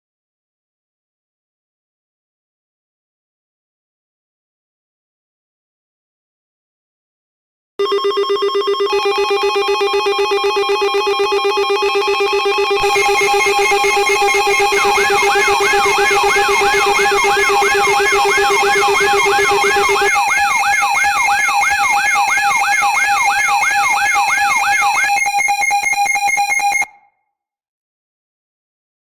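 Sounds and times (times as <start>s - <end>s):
layered electronic alarm tones: 7.8s - 26.9s
siren-like warble: 7.8s - 26.9s.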